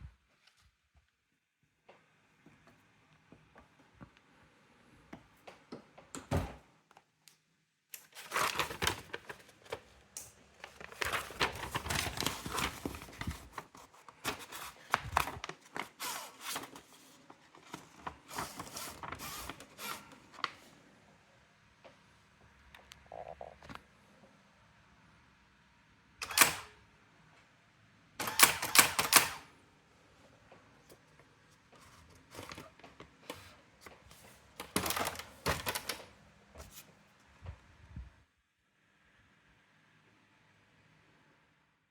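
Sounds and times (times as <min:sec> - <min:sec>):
typewriter parts clicking and rattling: 0:28.2 - 0:29.4.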